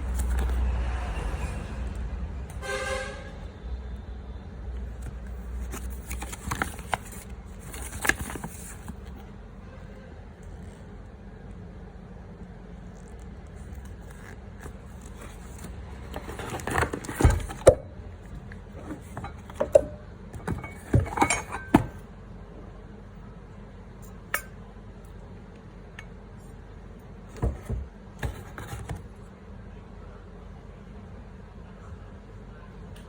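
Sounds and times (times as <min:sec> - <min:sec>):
hard objects clinking and knocking: 0:18.8 - 0:22.0.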